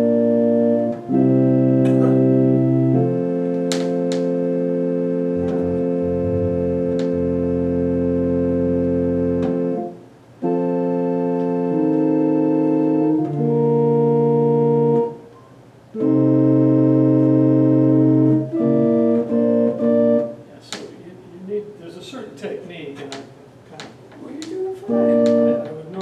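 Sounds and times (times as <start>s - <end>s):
organ playing held chords: 0.0s - 20.6s, 24.4s - 26.0s
low pedal bass note: 5.1s - 9.6s.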